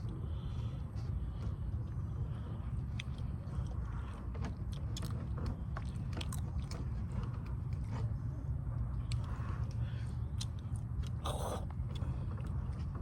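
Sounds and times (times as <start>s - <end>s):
steady low rumble: 0.0s - 13.0s
person chewing and smacking: 2.8s - 3.8s, 5.8s - 6.8s, 10.3s - 12.8s.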